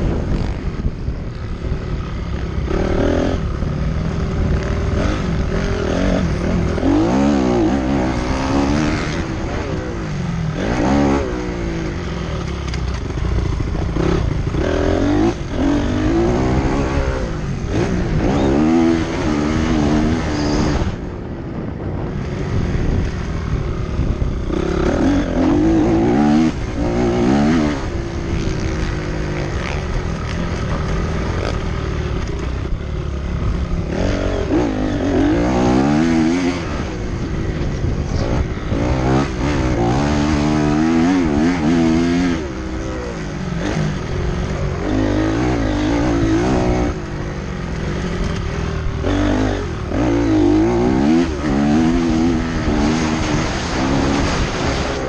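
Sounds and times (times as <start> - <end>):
motorcycle engines revving: 0.0 - 55.0.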